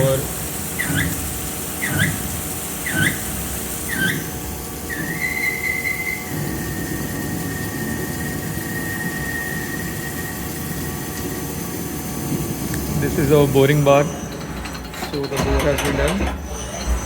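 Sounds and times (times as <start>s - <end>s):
machine running: 0.0s - 17.0s
lathe cutting squeal: 3.9s - 17.0s.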